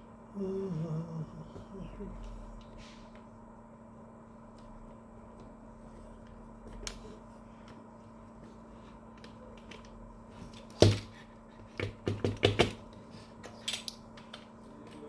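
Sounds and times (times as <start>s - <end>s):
plastic housing knocking: 11.8s - 12.8s.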